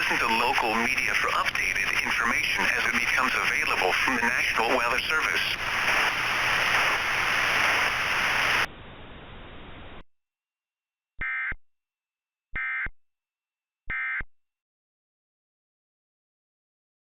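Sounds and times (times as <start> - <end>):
broadcast static hiss: 0.0 - 10.0.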